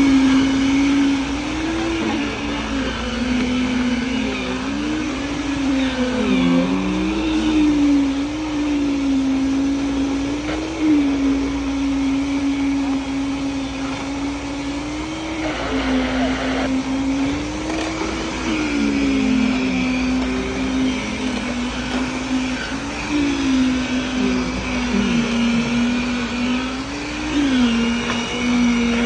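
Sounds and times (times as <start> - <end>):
machine motor humming: 0.0 - 29.0.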